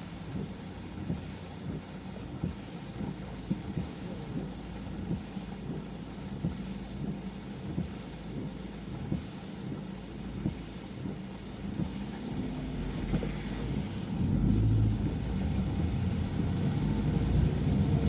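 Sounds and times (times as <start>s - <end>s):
engine and road hum: 0.0s - 18.0s
rain hiss: 0.0s - 18.0s.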